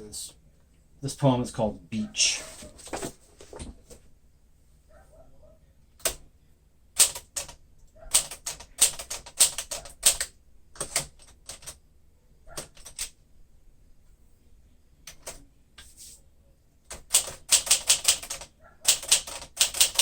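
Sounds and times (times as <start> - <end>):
manual typewriter keystrokes: 6.0 - 6.2, 7.0 - 11.8, 12.6 - 13.2, 15.1 - 15.4, 16.9 - 20.0.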